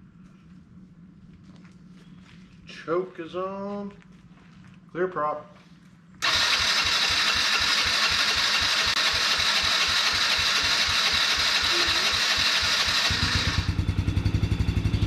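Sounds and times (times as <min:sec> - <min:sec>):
starter motor whirring: 0:06.2 - 0:13.9
engine chugging and running: 0:06.2 - 0:15.0.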